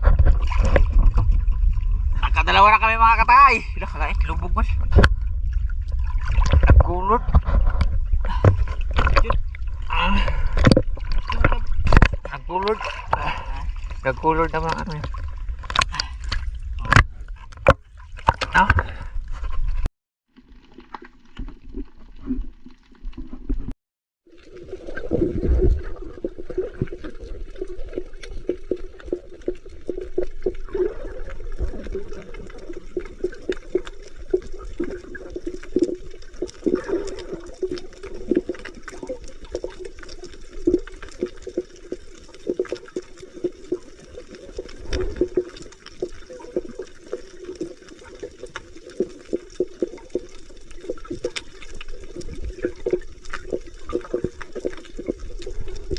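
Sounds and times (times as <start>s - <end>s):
muffled water sloshing: 0.0s - 55.9s.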